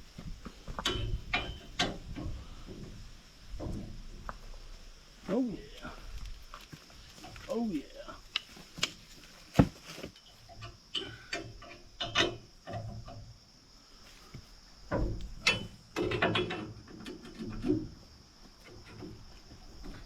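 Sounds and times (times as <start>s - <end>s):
metallic knocks: 0.7s - 3.0s, 10.5s - 13.3s, 14.9s - 18.0s.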